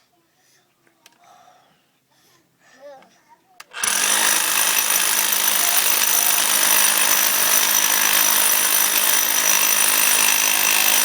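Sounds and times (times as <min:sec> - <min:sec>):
jackhammer chiselling concrete: 0:03.8 - 0:11.0.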